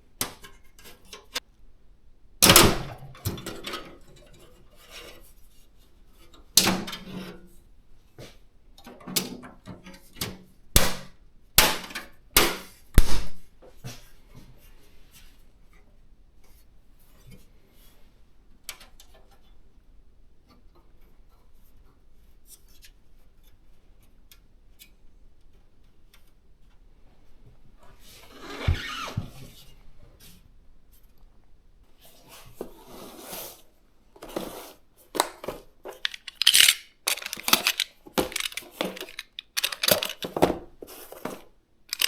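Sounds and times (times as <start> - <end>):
plastic and metal parts clicking: 35.2 - 40.6.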